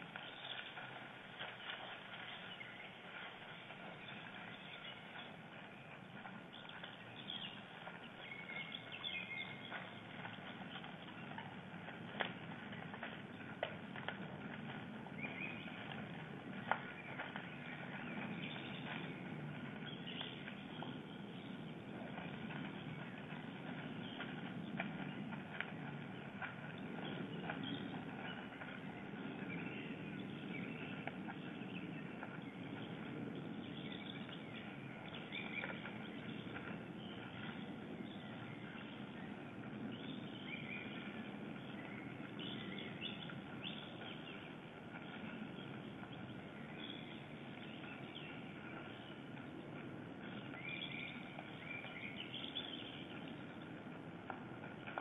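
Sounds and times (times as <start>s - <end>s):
bird calls: 0.0s - 53.9s
low background rumble: 0.0s - 55.0s.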